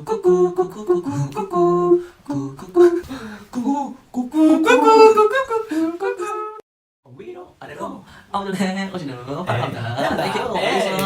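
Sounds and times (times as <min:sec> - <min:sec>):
men humming and singing: 0:00.0 - 0:06.6.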